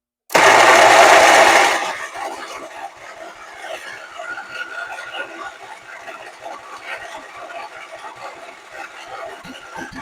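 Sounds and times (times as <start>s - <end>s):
starter cranking mower engine: 0.3s - 2.4s.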